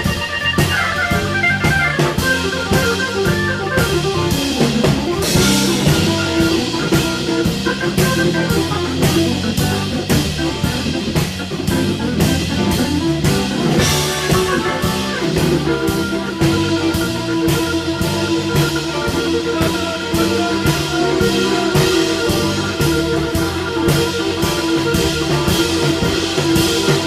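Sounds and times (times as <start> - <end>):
drum kit beat: 0.0 - 27.0
electric guitar: 0.0 - 27.0
organ: 0.0 - 27.0.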